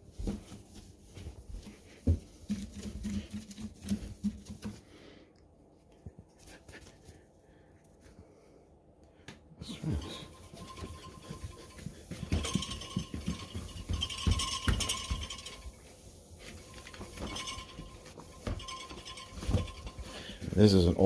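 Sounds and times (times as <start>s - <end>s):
wipe rubbing on appliance: 9.9s - 20.1s.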